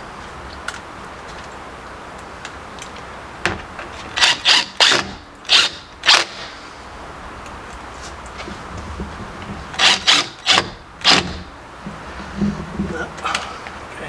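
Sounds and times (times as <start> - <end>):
screw rasping into wood: 4.0 - 6.6, 9.6 - 13.7.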